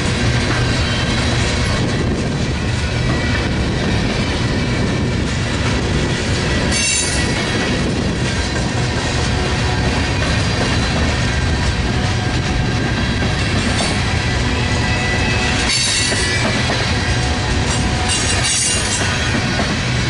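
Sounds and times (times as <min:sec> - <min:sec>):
freight train wheels rumbling: 0:00.0 - 0:20.0
train wheels squealing: 0:06.0 - 0:08.1, 0:12.0 - 0:20.0.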